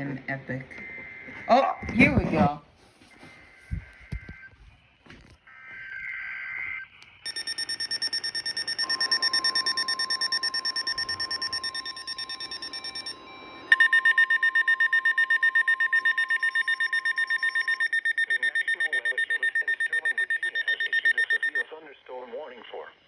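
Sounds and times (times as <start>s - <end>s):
rapid electronic beeping alarm: 7.2s - 21.6s
alert data screech: 7.3s - 21.6s
second louder beeping alarm: 7.3s - 21.6s
steady warning tone: 7.3s - 21.6s.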